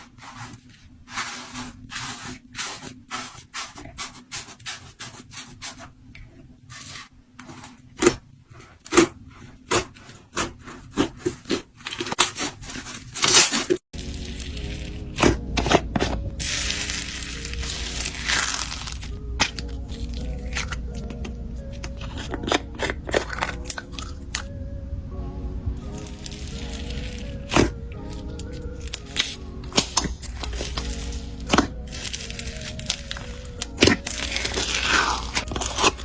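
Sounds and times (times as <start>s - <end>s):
soft background music: 14.0s - 36.0s.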